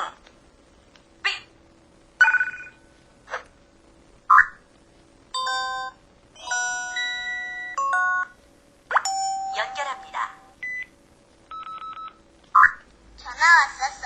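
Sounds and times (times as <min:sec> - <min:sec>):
electronic chimes: 0:05.4 - 0:10.8.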